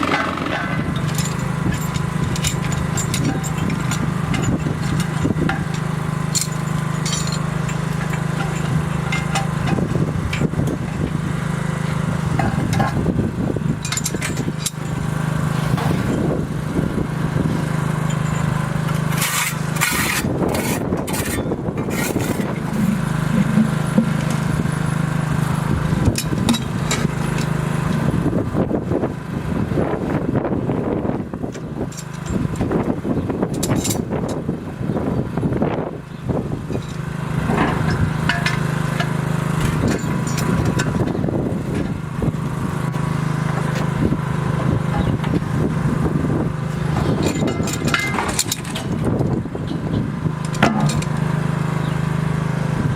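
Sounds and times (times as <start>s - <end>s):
metal scraping and clicking: 0.0s - 11.0s, 13.8s - 15.0s, 18.0s - 24.7s, 47.0s - 49.1s
small machine motor humming: 0.0s - 29.4s.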